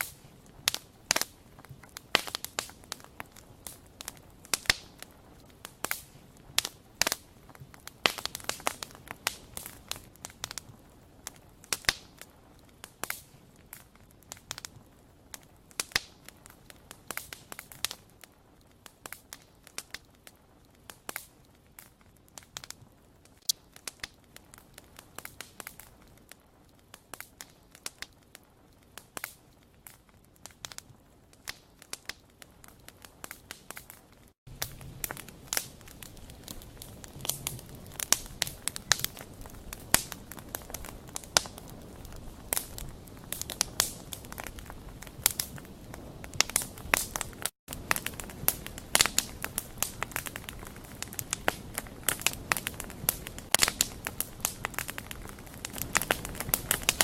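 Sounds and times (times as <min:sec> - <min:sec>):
faint hiss: 0:00.0 - 0:13.6
wood fire crackling and popping: 0:00.0 - 0:57.0.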